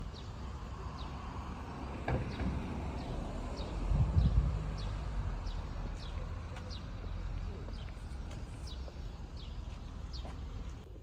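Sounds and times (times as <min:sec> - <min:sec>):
bird chirping: 0:02.3 - 0:10.8.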